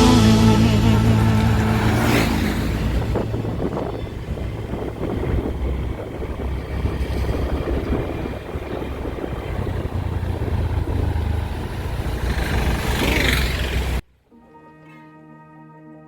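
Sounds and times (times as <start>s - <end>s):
music: 0.0s - 1.6s, 14.3s - 16.0s
vehicle rumbling: 0.0s - 14.0s.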